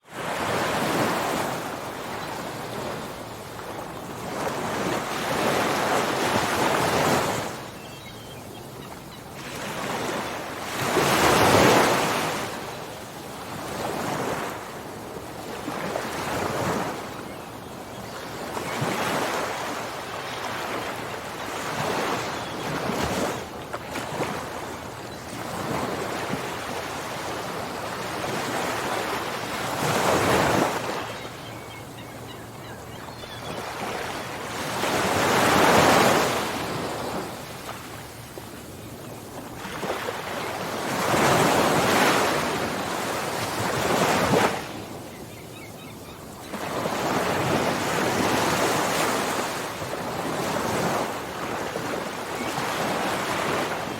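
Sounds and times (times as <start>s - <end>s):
ocean waves breaking: 9.4s - 12.7s, 39.4s - 45.0s, 46.5s - 53.9s.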